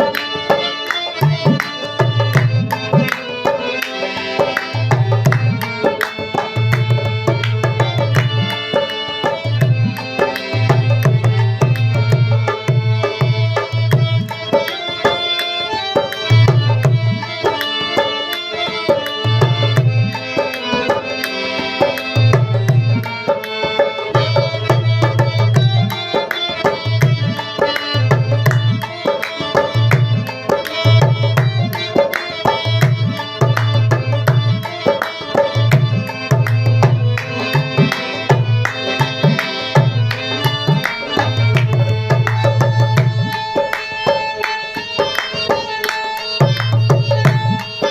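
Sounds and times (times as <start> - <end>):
tabla-style hand drumming: 0.0 - 47.9
melody: 35.6 - 47.9.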